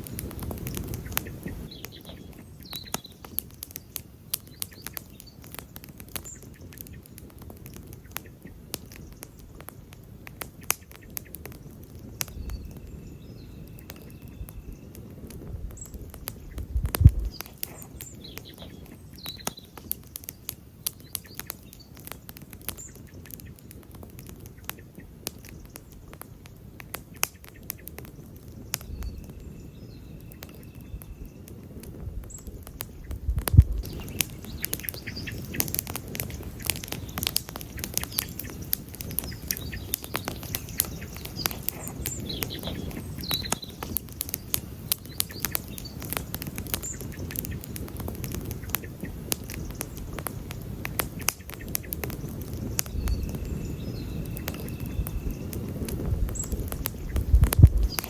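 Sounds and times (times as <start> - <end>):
campfire crackling and popping: 0.0 - 58.0
low rumble of flames: 0.0 - 58.0.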